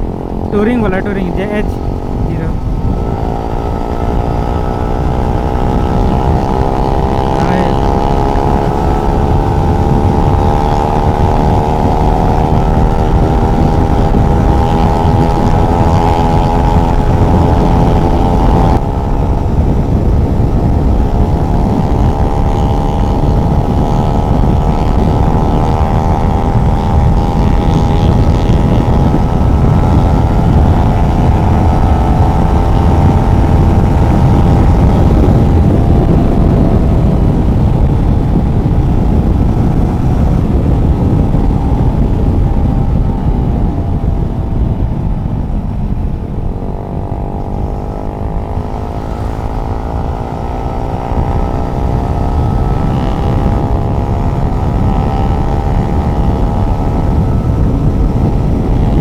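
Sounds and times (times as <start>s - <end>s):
motorcycle engine running: 0.0s - 59.0s
wind rumbling on microphone: 0.0s - 59.0s.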